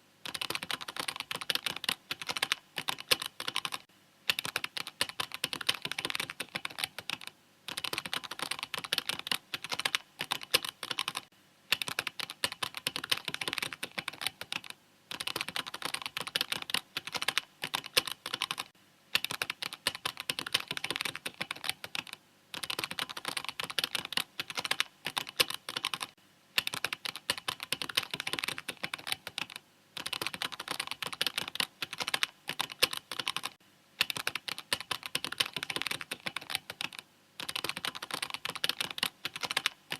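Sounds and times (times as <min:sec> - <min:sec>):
mechanical keyboard typing: 0:00.2 - 0:39.9.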